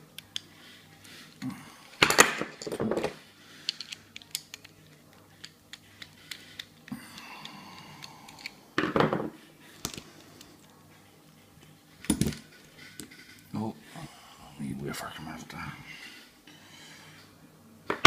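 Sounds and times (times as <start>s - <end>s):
metallic clicks of lockpicking tools: 3.7s - 8.6s.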